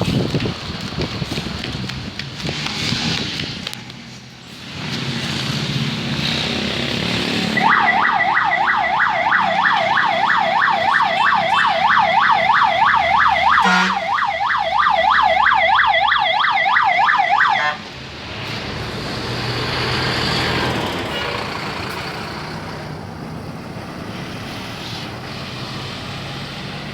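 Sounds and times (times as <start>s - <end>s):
traffic noise: 0.0s - 26.9s
siren yelp: 7.6s - 17.8s.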